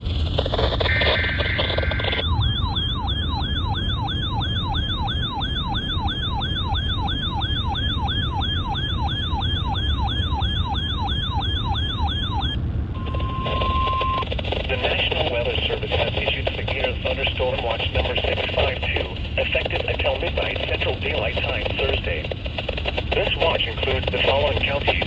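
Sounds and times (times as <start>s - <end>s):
electronic yelp siren: 0.8s - 15.3s
short steady beep: 1.9s - 14.2s.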